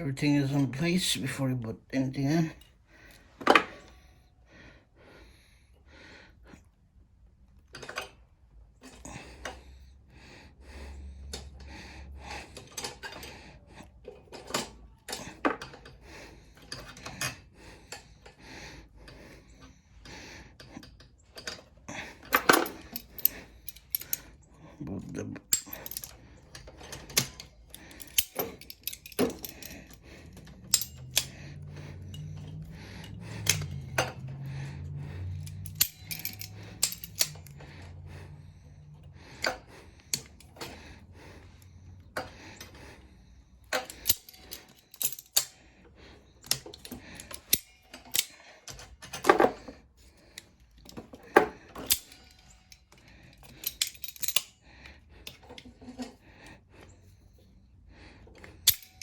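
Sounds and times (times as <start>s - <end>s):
metal parts clinking: 14.0s - 18.4s, 20.6s - 40.9s, 43.6s - 56.2s, 58.3s - 59.0s.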